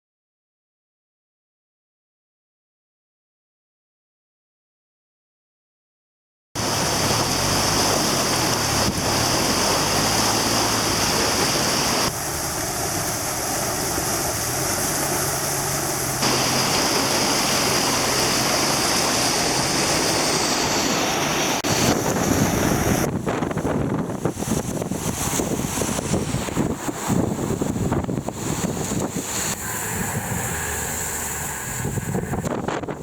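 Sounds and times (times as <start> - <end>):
wind buffeting microphone: 6.6 - 12.2, 21.2 - 33.0
river water rushing loudly: 6.6 - 33.0.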